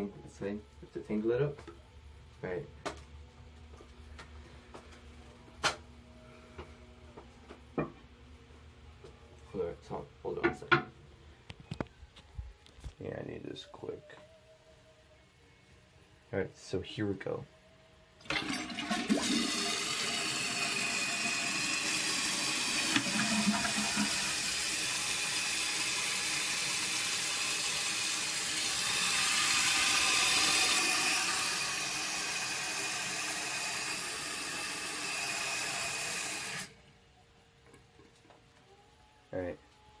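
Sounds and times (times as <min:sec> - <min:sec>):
toilet fill valve hissing: 0:18.2 - 0:36.7.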